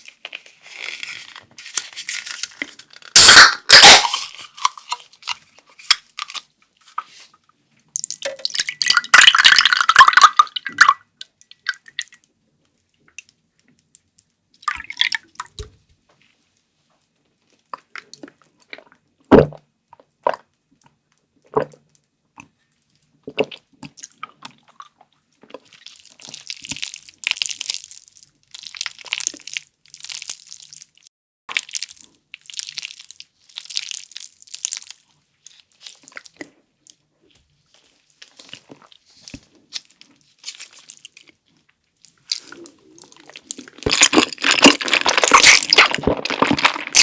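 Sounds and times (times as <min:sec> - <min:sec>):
wet chewing and mouth clicks: 0:22.4 - 0:37.0, 0:37.7 - 0:47.0
crunchy chewing: 0:37.8 - 0:47.0.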